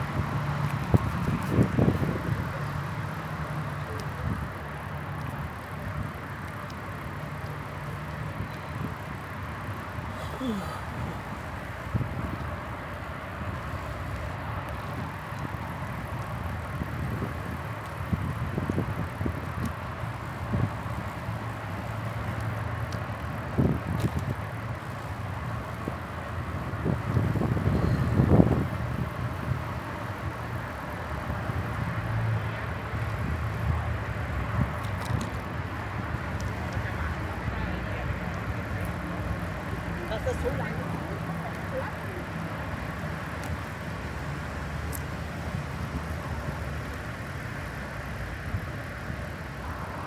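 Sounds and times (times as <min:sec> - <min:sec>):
bicycle tyres rumbling on path: 0:00.0 - 0:50.0
bicycle knocks and rattles: 0:14.6 - 0:25.6.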